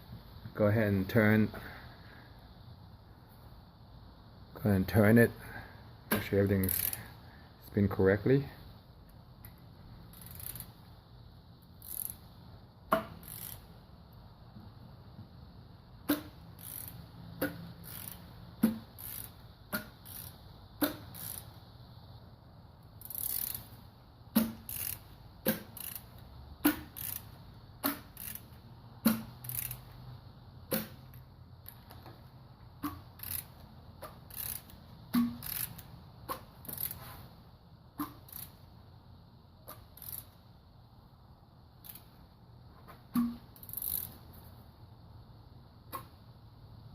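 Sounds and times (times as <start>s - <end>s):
ratchet wrench clicking: 6.1s - 7.2s, 9.1s - 10.9s, 11.6s - 12.3s, 12.9s - 13.8s, 16.1s - 21.6s, 22.9s - 23.8s, 24.4s - 30.0s, 30.7s - 32.1s, 32.8s - 37.2s, 38.0s - 38.6s, 39.7s - 40.4s, 41.8s - 42.2s, 43.6s - 44.2s.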